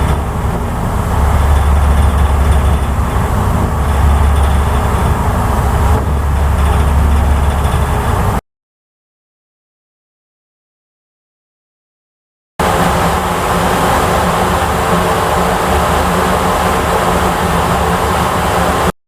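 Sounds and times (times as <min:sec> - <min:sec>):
ferry engines rumbling: 0:00.0 - 0:08.4, 0:12.6 - 0:18.9.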